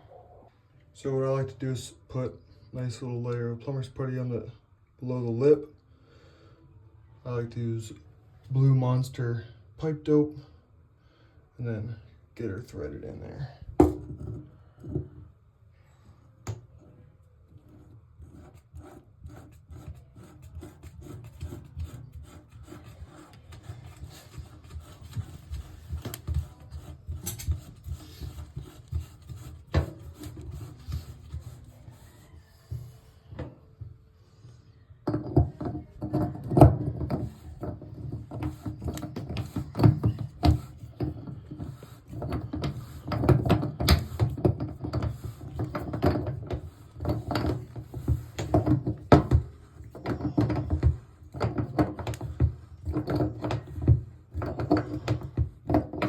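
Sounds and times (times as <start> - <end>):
drain flange scraping and clicking: 17.5 - 32.3, 35.1 - 56.0.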